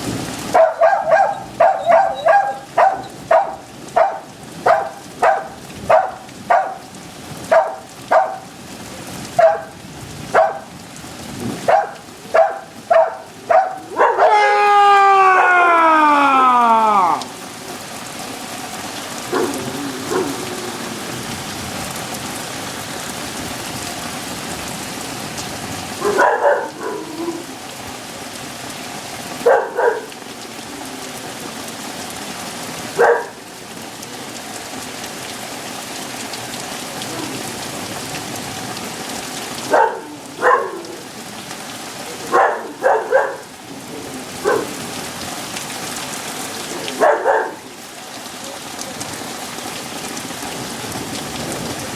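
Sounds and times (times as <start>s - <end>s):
rain pouring: 0.0s - 51.9s
dogs barking: 0.5s - 8.5s, 9.3s - 10.7s, 11.6s - 15.7s, 19.2s - 21.1s, 26.0s - 27.5s, 29.4s - 30.2s, 32.9s - 33.4s, 39.6s - 41.1s, 42.2s - 43.6s, 44.4s - 44.8s, 46.8s - 47.7s.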